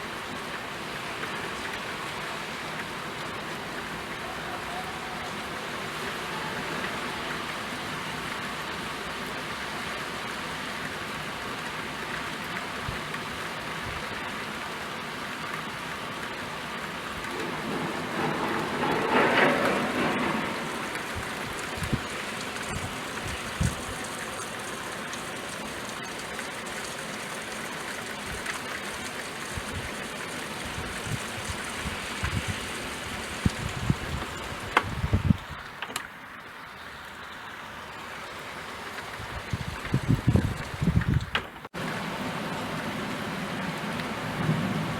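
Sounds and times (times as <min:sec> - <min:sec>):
steady rainfall: 0:00.0 - 0:44.9
sharp drips tapping: 0:20.8 - 0:34.9.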